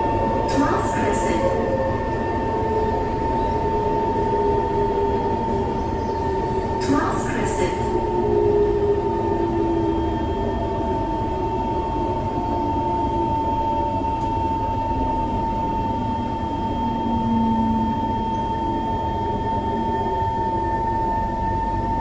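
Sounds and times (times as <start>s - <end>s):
train running rumble: 0.0s - 18.2s.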